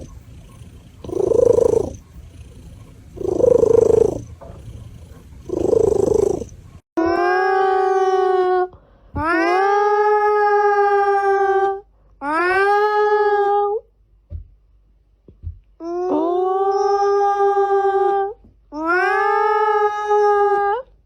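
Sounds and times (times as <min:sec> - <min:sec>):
cat howling: 0:07.0 - 0:08.6, 0:18.8 - 0:20.8.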